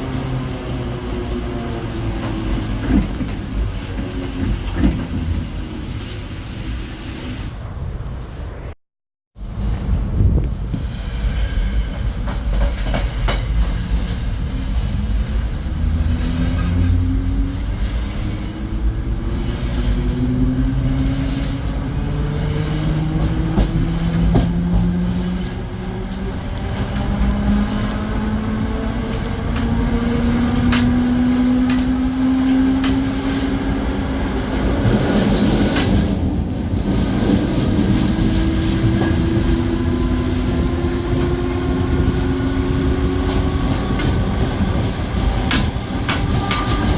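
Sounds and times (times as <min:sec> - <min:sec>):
wheels rumbling on rail: 0:00.0 - 0:08.7, 0:09.4 - 0:46.9.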